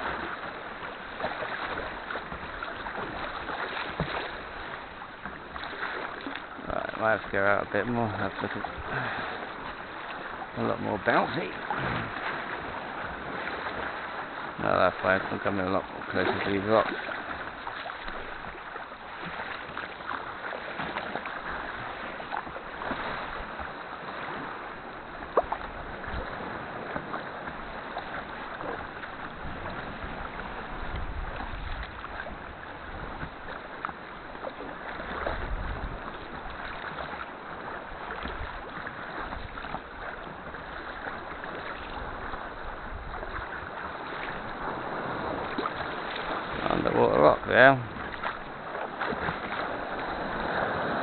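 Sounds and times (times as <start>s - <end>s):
paddle strokes: 0.0s - 51.0s
water splashing against hull: 0.0s - 51.0s.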